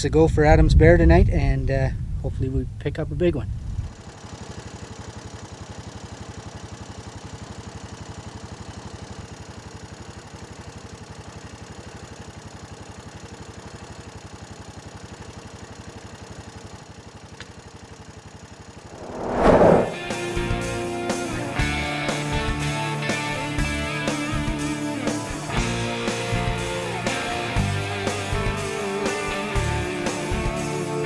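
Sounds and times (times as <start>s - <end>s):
atv engine running: 3.8s - 17.9s.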